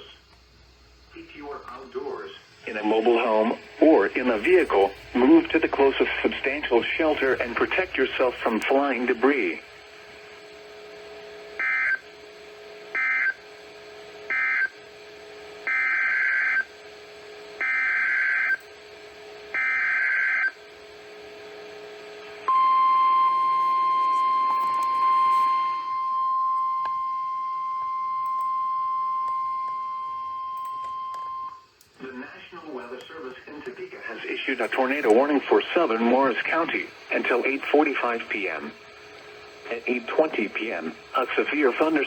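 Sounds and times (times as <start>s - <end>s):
steady single-pitch alarm tone: 11.5s - 13.4s, 14.3s - 14.8s, 15.6s - 16.8s, 17.6s - 18.7s, 19.5s - 20.6s, 22.4s - 31.7s.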